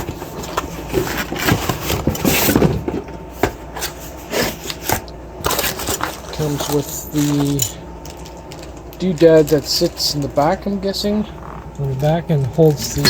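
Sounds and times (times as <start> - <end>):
cardboard rustling and scraping: 0.0 - 7.4.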